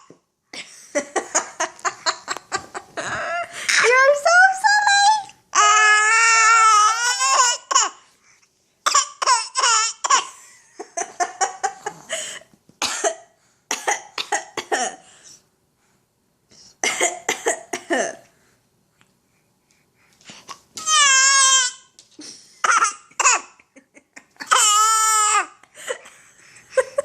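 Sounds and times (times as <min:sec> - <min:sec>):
child coughing: 0:08.9 - 0:10.4, 0:12.8 - 0:15.0, 0:22.6 - 0:23.5.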